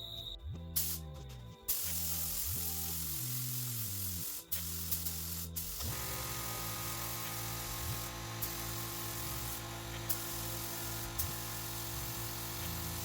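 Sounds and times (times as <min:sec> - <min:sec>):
background music: 0:00.0 - 0:13.0
air spray gun hissing: 0:00.8 - 0:01.0, 0:01.7 - 0:13.0.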